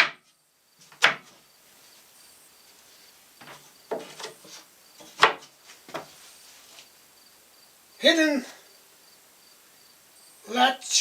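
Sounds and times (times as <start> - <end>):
insects chirping: 0.0 - 11.0.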